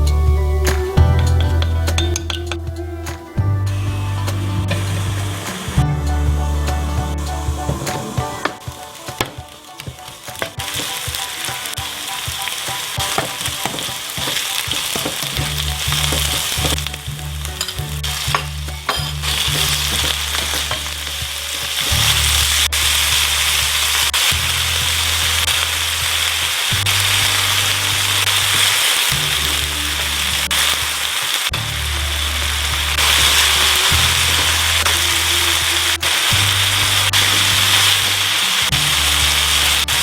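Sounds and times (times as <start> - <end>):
food sizzling in a pan: 7.4 - 40.0.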